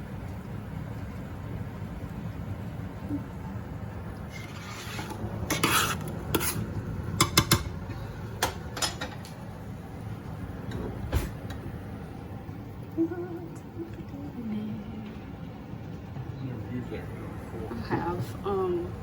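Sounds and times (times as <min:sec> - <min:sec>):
steady low hum: 0:00.0 - 0:19.0
utensils clinking against pots: 0:07.2 - 0:07.8, 0:08.4 - 0:09.4.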